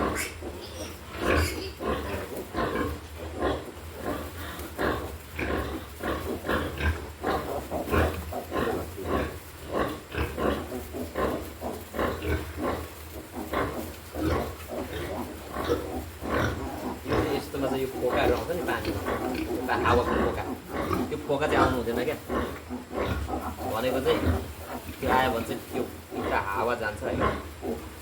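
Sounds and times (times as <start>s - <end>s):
pigs grunting: 0.0s - 28.0s.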